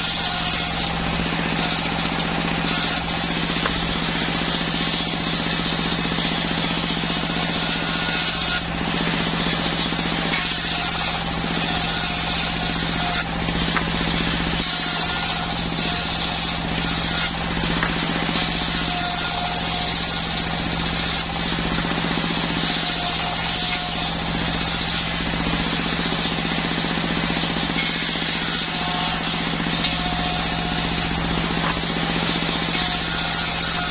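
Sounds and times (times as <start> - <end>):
circular saw humming: 0.0 - 33.9
saw blade cutting log: 0.0 - 33.9.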